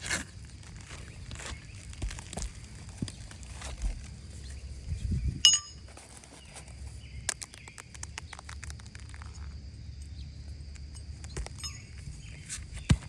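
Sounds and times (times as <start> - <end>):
bird chirp: 4.0 - 13.0.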